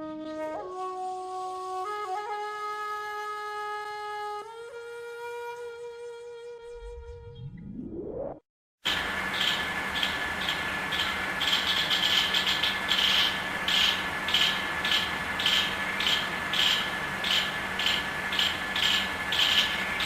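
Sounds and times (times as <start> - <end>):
squirrel chattering: 9.3 - 20.0.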